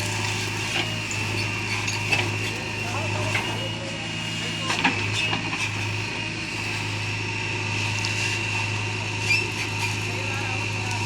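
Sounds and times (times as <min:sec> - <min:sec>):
diesel engine running: 0:00.0 - 0:11.0.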